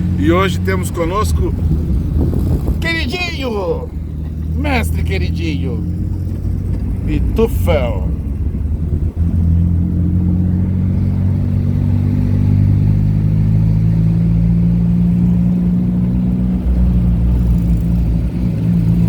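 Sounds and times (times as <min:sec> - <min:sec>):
dune buggy engine running: 0:00.0 - 0:19.0.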